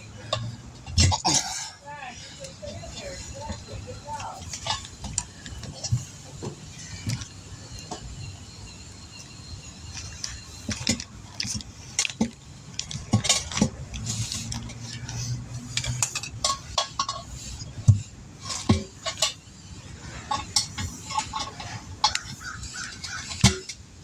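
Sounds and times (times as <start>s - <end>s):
metal tools clinking on wheel rim: 0.0s - 23.9s
low steady hum: 0.0s - 24.0s.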